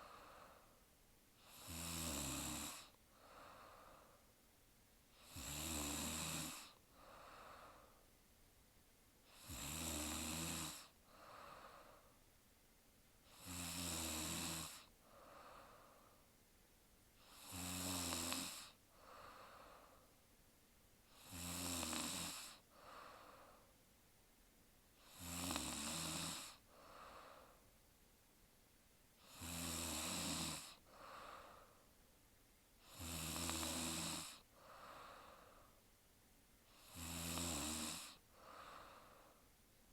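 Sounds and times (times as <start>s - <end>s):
soft breath: 0.0s - 1.5s, 2.7s - 4.5s, 6.5s - 8.2s, 10.7s - 12.4s, 14.7s - 16.4s, 18.6s - 20.2s, 22.4s - 23.9s, 26.4s - 27.8s, 30.6s - 32.0s, 33.6s - 36.0s, 37.8s - 39.9s
woman snoring: 1.4s - 4.1s, 5.2s - 7.9s, 9.3s - 12.1s, 13.3s - 16.2s, 17.2s - 20.0s, 21.1s - 23.6s, 25.0s - 27.6s, 29.2s - 31.7s, 32.8s - 35.6s, 36.7s - 39.4s.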